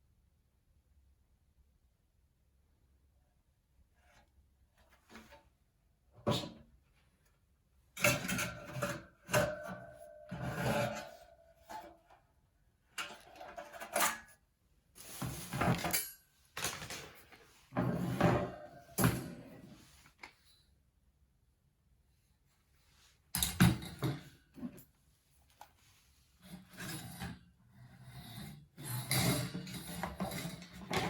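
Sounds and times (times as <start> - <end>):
steel trays clinking and scraping: 8.0 - 12.0.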